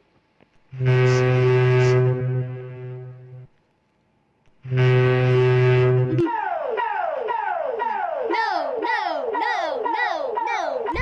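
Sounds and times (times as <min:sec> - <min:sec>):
buzzy horn-like alert blasts: 0:00.7 - 0:03.5, 0:04.6 - 0:06.3
falling siren sweeps: 0:06.1 - 0:11.0.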